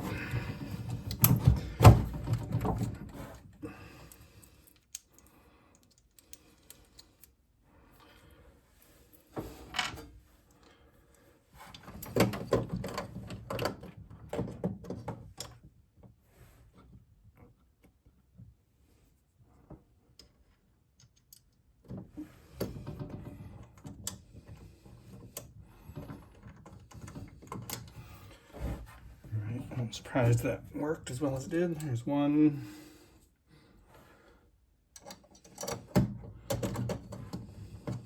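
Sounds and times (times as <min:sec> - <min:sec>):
parts and tools clicking and rattling: 0:00.1 - 0:07.4, 0:11.7 - 0:15.6, 0:20.1 - 0:22.0, 0:34.9 - 0:38.0.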